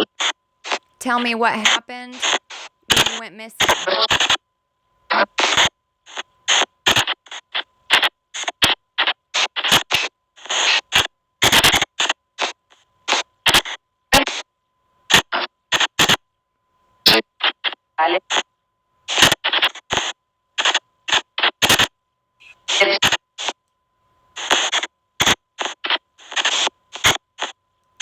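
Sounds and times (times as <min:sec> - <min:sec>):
chopped bursts of radio noise: 0:00.0 - 0:04.4, 0:19.1 - 0:23.6.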